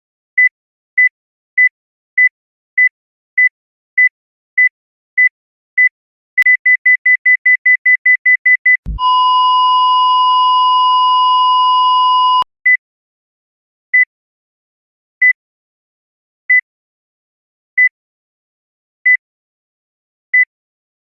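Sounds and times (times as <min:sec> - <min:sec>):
heart monitor beeps: 0:00.4 - 0:12.8
flatline tone: 0:08.9 - 0:12.4.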